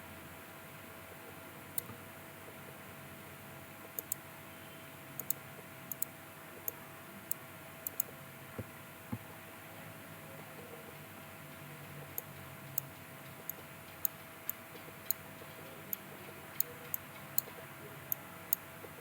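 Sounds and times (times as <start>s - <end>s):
steady hiss with faint hum: 0.0s - 19.0s
computer mouse clicking: 4.0s - 4.2s, 5.2s - 6.1s, 7.9s - 8.1s, 12.2s - 15.2s.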